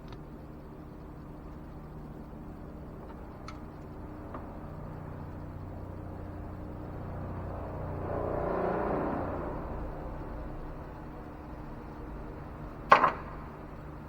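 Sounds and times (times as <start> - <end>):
steady low hum: 0.0 - 14.0
vehicle passing by: 6.6 - 12.0.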